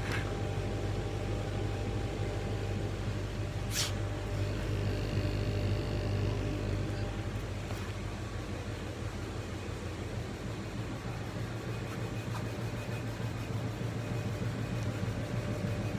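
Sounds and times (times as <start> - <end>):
machine fans and pumps humming: 0.0 - 15.9
short hiss: 3.7 - 4.0.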